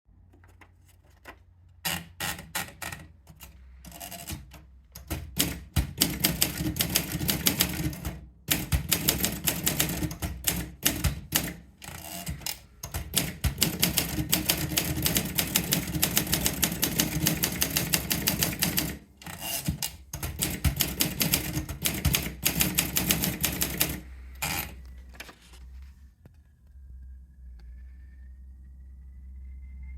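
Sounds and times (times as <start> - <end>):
manual typewriter typing: 1.8 - 24.8.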